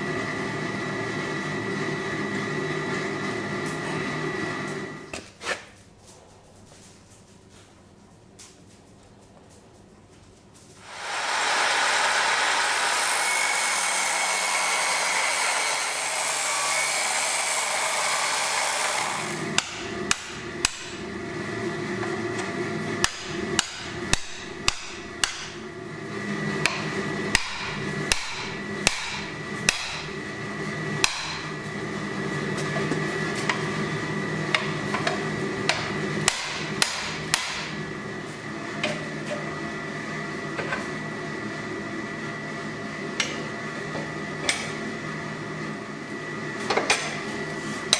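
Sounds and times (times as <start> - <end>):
hammer striking steel on anvil: 19.6 - 21.0, 23.0 - 25.6, 26.6 - 30.1, 31.0 - 31.5, 35.7 - 37.7.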